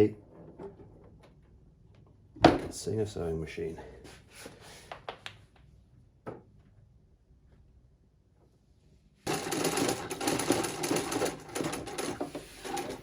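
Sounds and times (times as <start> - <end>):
sewing machine stitching: 9.3 - 13.0.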